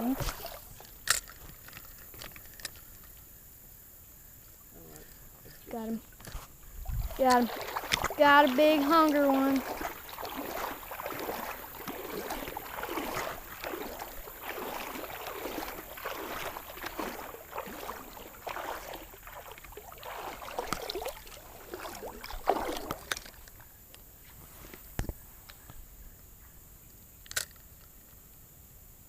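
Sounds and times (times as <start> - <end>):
river water splashing: 0.0 - 3.0, 5.2 - 23.9
loud splash or knock: 0.1 - 0.6, 6.9 - 23.2.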